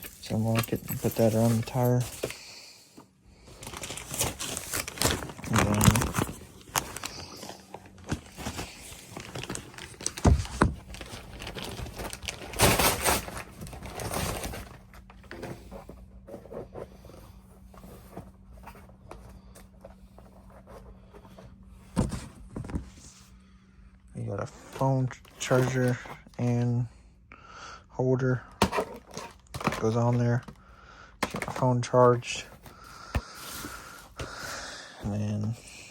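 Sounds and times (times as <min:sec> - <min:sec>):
handling knocks and clicks: 0:00.0 - 0:02.3
faint steady hum: 0:00.0 - 0:35.9.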